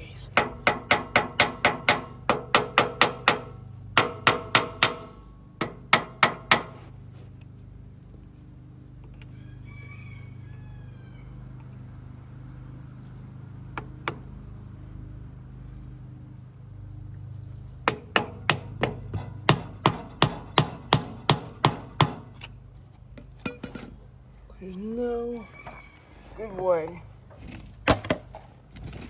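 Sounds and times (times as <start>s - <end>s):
steady low hum: 0.0s - 28.9s
hammer striking metal: 17.9s - 22.3s.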